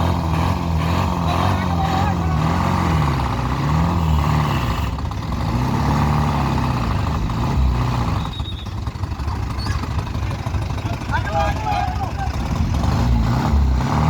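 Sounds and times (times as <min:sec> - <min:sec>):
truck diesel engine running: 0:00.0 - 0:14.0.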